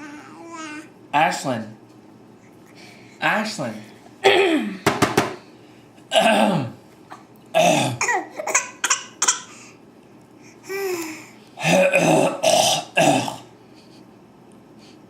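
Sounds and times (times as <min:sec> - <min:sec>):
people coughing: 0:04.2 - 0:04.8, 0:06.1 - 0:09.5, 0:11.6 - 0:13.4.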